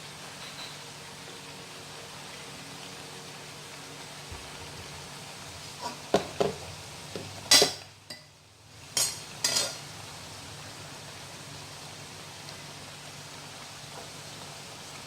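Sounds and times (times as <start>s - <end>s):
steady low hiss: 0.0s - 15.0s
metal utensils clinking on cookware: 0.4s - 0.8s, 7.5s - 8.3s, 9.0s - 9.8s.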